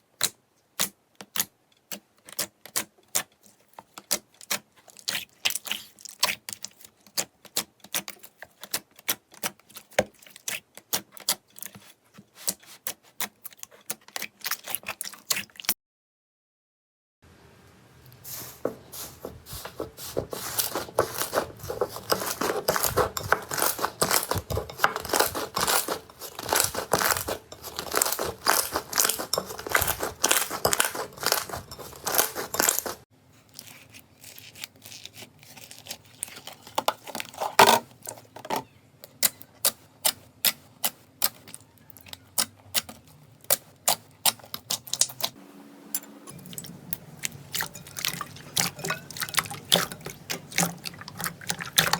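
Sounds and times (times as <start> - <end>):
slime crackling and popping: 20.1 - 33.0.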